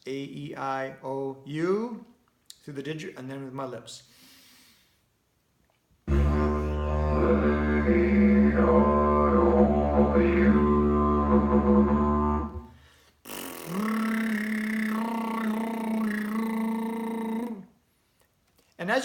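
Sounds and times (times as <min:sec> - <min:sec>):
didgeridoo drone: 0:06.1 - 0:12.7
lips buzzing: 0:06.1 - 0:17.6.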